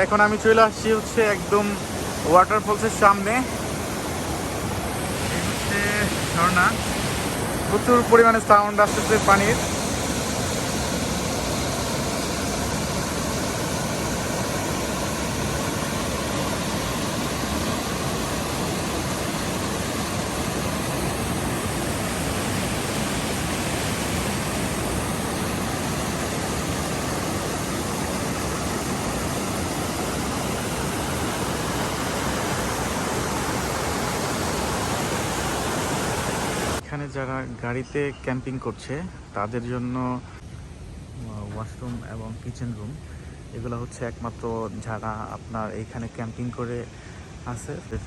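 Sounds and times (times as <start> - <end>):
waterfall rushing: 0.0 - 36.8.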